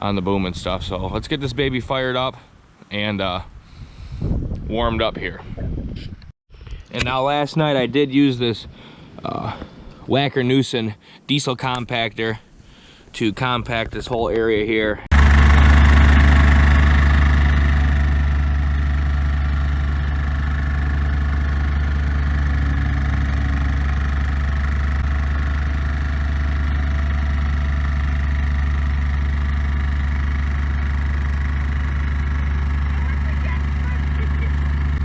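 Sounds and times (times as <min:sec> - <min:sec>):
plate compactor running: 0:15.1 - 0:35.0.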